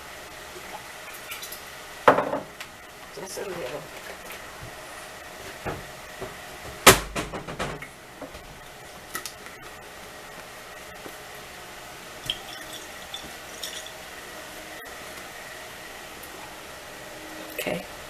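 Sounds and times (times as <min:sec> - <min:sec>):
kitchen handling knocks: 0:05.7 - 0:07.8.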